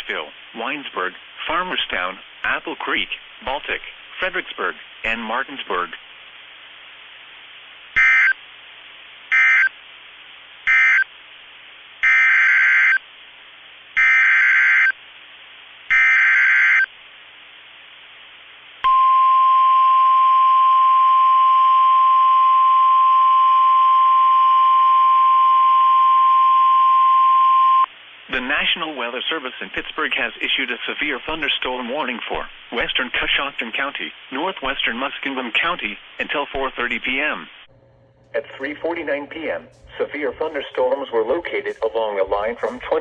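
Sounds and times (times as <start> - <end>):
radio hiss: 0.0 - 12.0, 27.9 - 43.0
steady alarm tone: 37.7 - 43.0.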